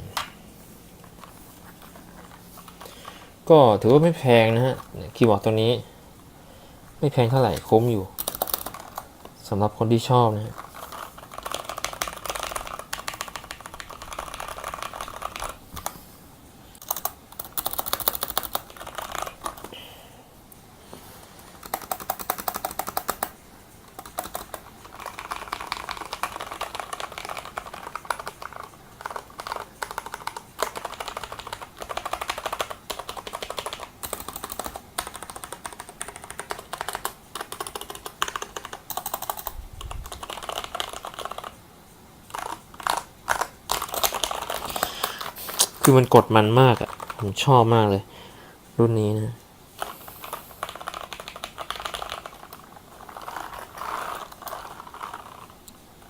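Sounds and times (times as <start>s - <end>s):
fast typing on mechanical keyboard: 1.0s - 5.8s, 7.1s - 16.0s, 16.8s - 19.8s, 21.5s - 41.6s, 42.3s - 48.0s, 49.8s - 55.8s.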